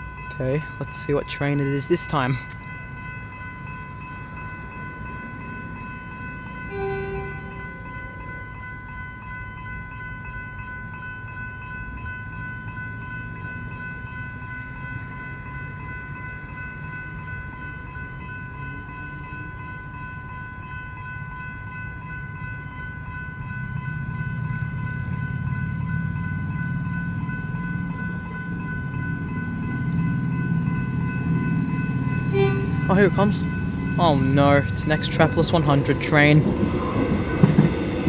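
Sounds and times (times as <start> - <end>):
level crossing bells ringing: 0.0 - 10.8, 27.2 - 37.1.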